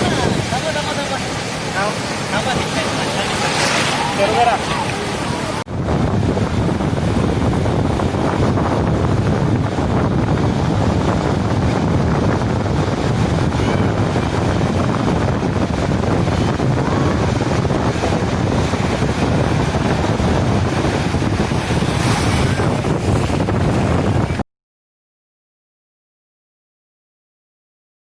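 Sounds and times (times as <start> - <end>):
sea waves breaking on beach: 0.0 - 24.4
wind on microphone: 0.0 - 24.4.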